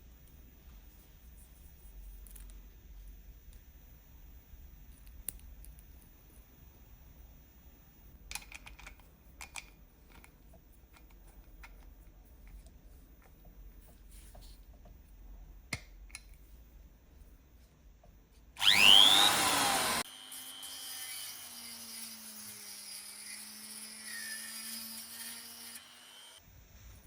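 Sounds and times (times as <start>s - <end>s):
power tool whining: 18.6s - 27.0s.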